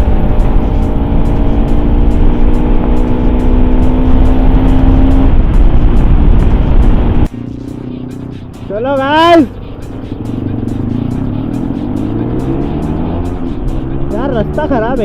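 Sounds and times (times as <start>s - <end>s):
wind rushing over microphone: 0.0s - 7.3s.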